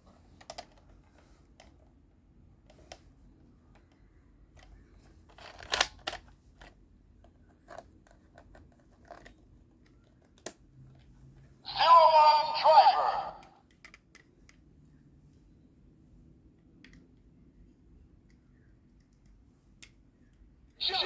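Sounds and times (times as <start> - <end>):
plastic parts clicking and scraping: 5.3 - 6.8.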